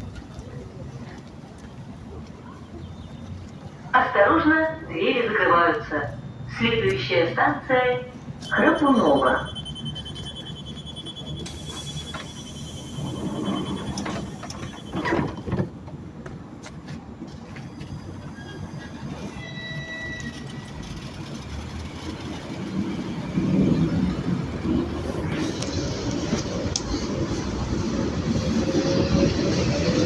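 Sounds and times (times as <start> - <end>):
train running gear rumbling: 0.0 - 4.9, 7.9 - 30.0
door-closing warning beeps: 8.4 - 15.6
train doors knocking shut: 13.0 - 16.0.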